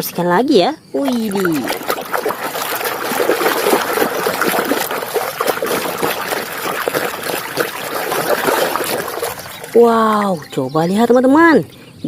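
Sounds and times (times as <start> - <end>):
water trickling and splattering: 1.0 - 11.5.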